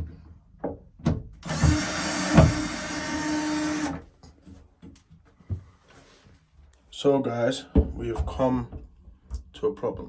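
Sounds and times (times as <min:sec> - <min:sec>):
electric drill boring: 0:01.4 - 0:04.0.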